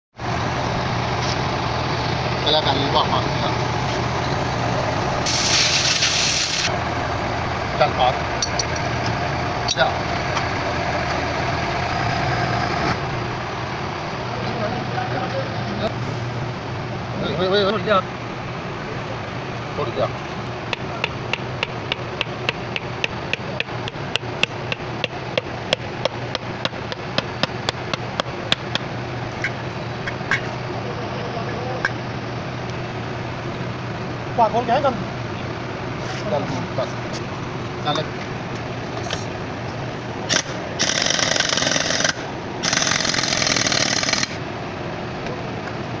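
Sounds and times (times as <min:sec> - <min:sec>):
hammer striking metal: 0:20.7 - 0:28.8
power tool running: 0:40.2 - 0:44.4.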